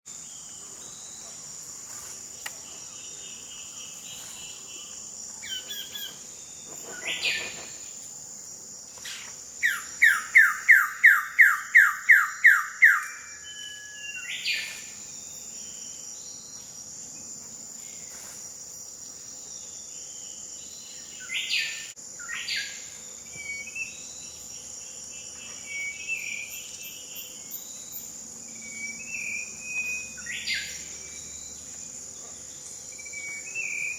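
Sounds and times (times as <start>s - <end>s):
high insect drone: 0.1s - 33.9s.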